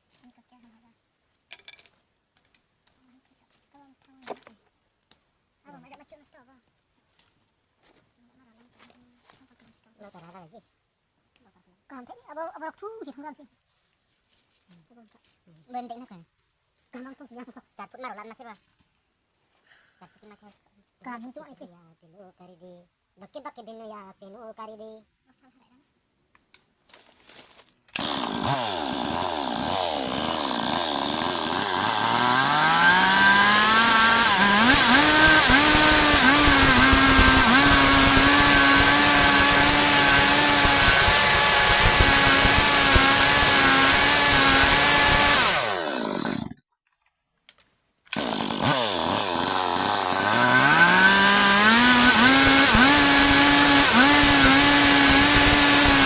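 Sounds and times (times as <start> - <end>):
chainsaw sawing through log: 27.9 - 46.6, 48.1 - 56.0.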